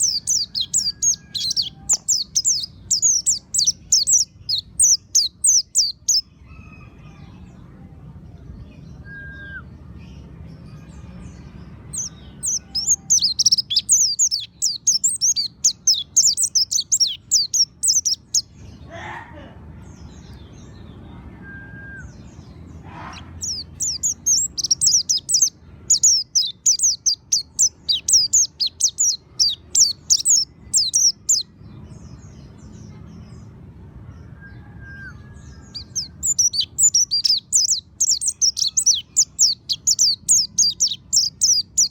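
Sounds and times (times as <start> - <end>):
bird twittering: 23.1 - 31.4, 35.8 - 41.9.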